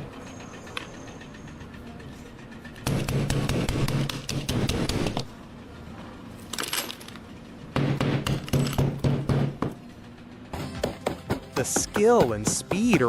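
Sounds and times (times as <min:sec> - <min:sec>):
rapid hammer strikes: 0:02.6 - 0:05.3, 0:07.7 - 0:13.0.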